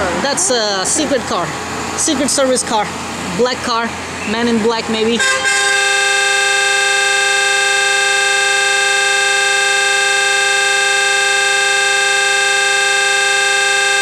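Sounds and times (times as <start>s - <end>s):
horn steady tone: 5.0s - 14.0s.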